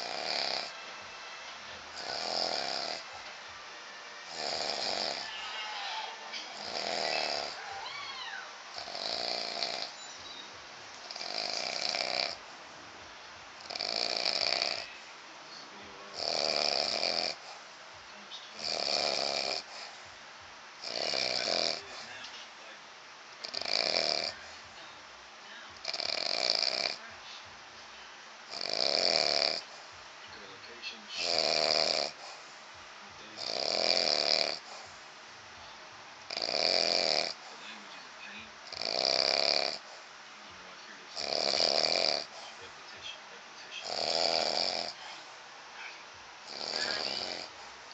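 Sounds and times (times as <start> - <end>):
man snoring: 0.0 - 0.8, 2.0 - 3.2, 4.2 - 7.8, 8.7 - 10.0, 11.0 - 12.4, 13.6 - 15.0, 16.0 - 17.6, 18.5 - 20.0, 20.8 - 22.2, 23.4 - 24.6, 25.8 - 27.1, 28.5 - 29.8, 31.2 - 32.4, 33.3 - 35.0, 36.3 - 37.8, 38.6 - 40.0, 41.1 - 42.6, 43.8 - 45.3, 46.4 - 47.9.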